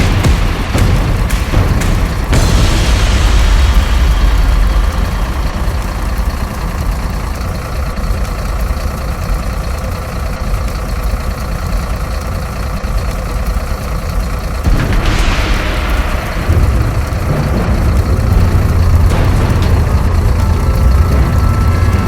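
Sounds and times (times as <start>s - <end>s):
loud low rumble: 0.0s - 10.4s, 14.3s - 22.0s
school bell ringing: 16.4s - 22.0s.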